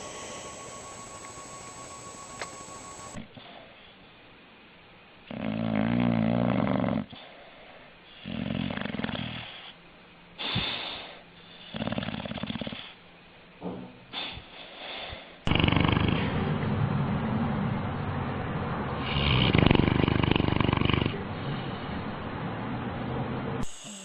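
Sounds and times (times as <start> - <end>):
dog snoring: 5.3 - 7.4, 8.1 - 9.8, 10.4 - 13.0, 14.1 - 16.7, 19.0 - 21.8.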